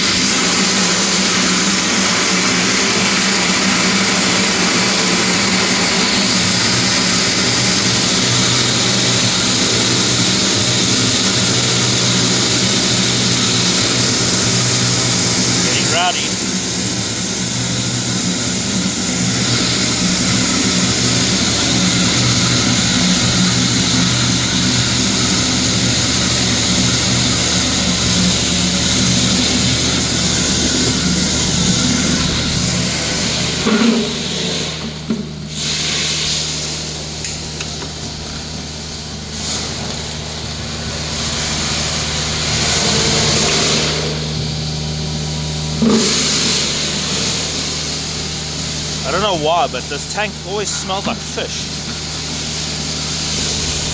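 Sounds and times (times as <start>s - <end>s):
suction hose hissing: 9.6s - 32.3s.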